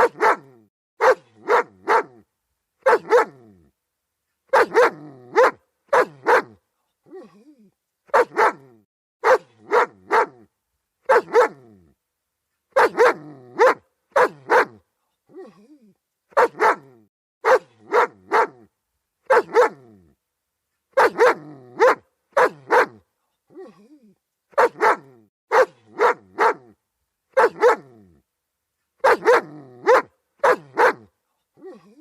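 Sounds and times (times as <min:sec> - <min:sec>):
dog barking: 0:00.0 - 0:02.2, 0:02.8 - 0:03.5, 0:04.5 - 0:06.6, 0:08.1 - 0:11.7, 0:12.7 - 0:14.8, 0:16.3 - 0:20.0, 0:20.9 - 0:23.0, 0:24.5 - 0:28.0, 0:29.0 - 0:31.1.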